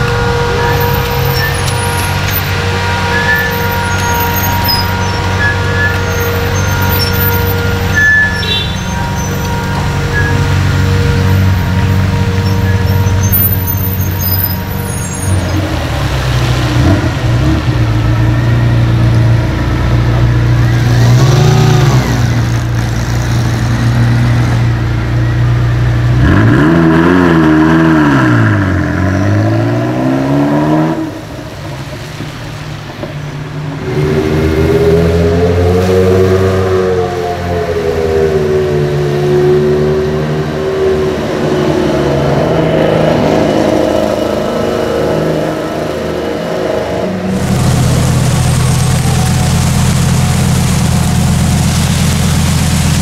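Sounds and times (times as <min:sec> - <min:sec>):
car engines revving: 0:00.0 - 0:53.0.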